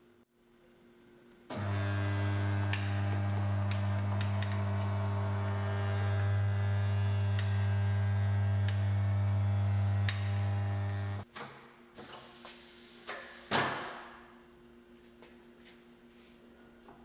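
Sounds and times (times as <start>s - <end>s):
electric motor hum: 1.5s - 11.3s
air hiss: 12.0s - 14.1s.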